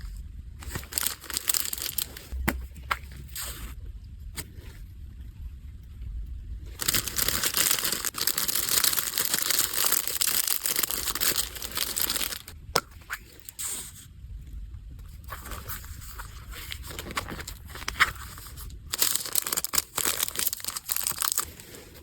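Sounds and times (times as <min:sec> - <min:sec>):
packaging crinkling and tearing: 0:00.6 - 0:02.4, 0:06.7 - 0:13.6, 0:15.3 - 0:22.0.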